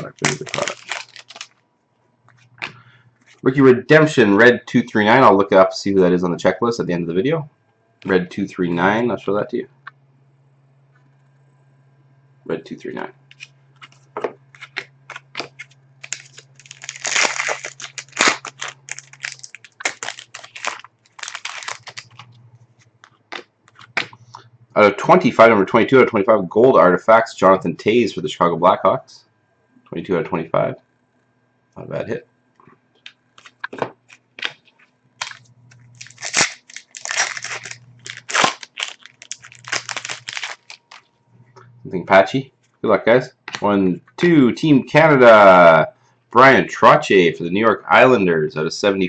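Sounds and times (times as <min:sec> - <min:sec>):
trading cards clicking and flicking: 0:00.0 - 0:01.5, 0:13.3 - 0:22.4, 0:23.3 - 0:24.5
foil wrapper crinkling: 0:00.0 - 0:01.6, 0:13.3 - 0:24.2, 0:33.4 - 0:41.2.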